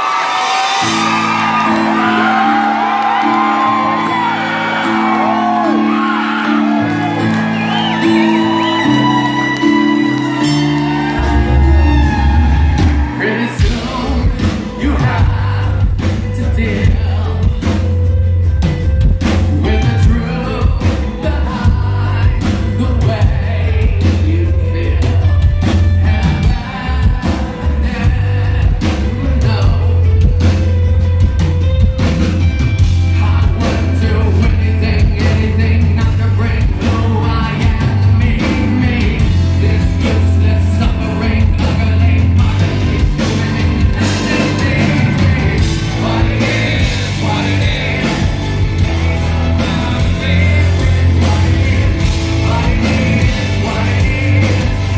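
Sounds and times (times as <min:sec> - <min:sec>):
crowd shouting: 0:00.0 - 0:13.6
drums: 0:00.0 - 0:54.9
live rock band playing: 0:00.0 - 0:54.9
heavy low bass: 0:10.8 - 0:54.9.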